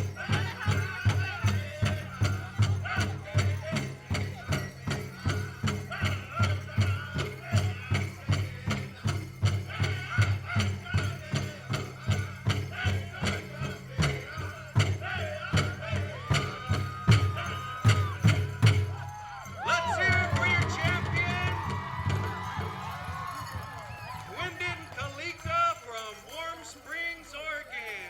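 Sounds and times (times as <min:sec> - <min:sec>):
big drum steady beat: 0:00.0 - 0:25.9
singers' high wavering voices: 0:00.0 - 0:26.7.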